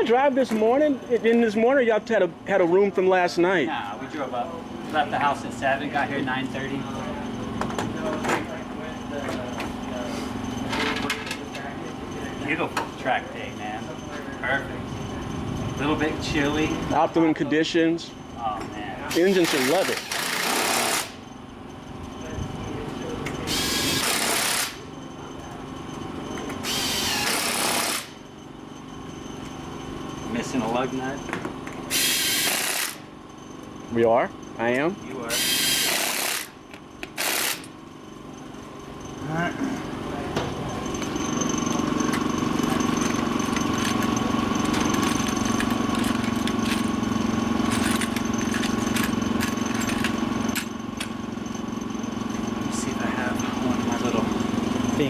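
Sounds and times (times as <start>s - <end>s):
small engine running steadily: 0.8s - 55.0s
power tool motor whine: 19.1s - 21.2s, 23.4s - 24.8s, 26.4s - 28.2s, 31.9s - 33.1s, 35.3s - 37.7s.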